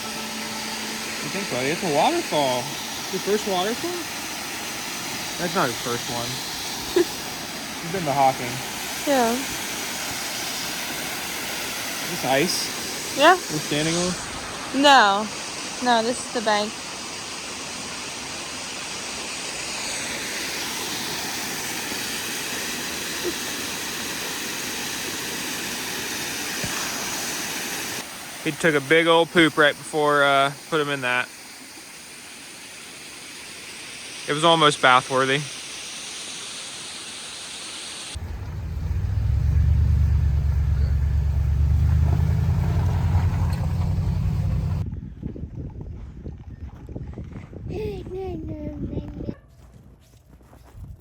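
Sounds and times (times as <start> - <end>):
waterfall roaring: 0.0 - 31.2
rushing hiss: 0.0 - 44.8
vehicle engine rumbling: 38.2 - 44.9.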